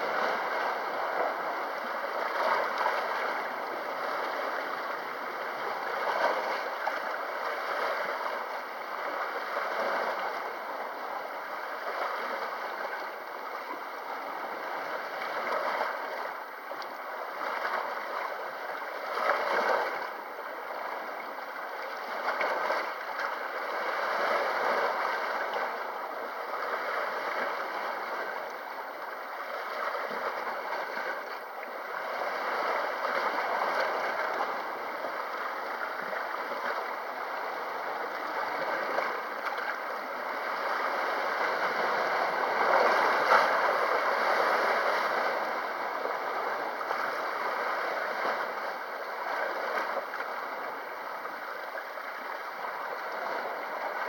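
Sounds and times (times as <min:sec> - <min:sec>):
sea water washing against shore: 0:23.6 - 0:54.0.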